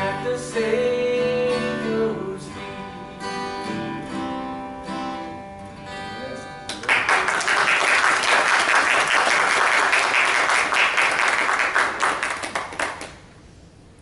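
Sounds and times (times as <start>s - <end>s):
congregation applauding: 6.7s - 13.3s.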